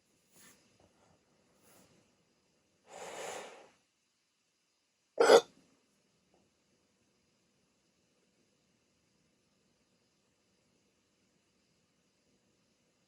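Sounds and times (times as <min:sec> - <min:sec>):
faint breaths: 0:02.9 - 0:03.8
person hiccuping: 0:05.2 - 0:05.4.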